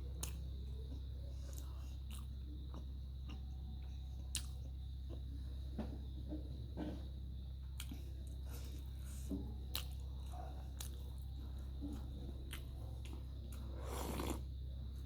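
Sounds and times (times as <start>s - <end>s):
crunching or slurping: 13.5s - 14.5s.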